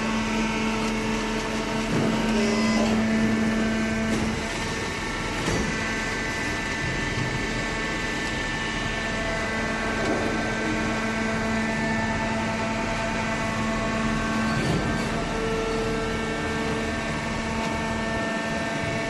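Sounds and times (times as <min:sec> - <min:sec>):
baler motor and pump humming: 0:00.0 - 0:19.0.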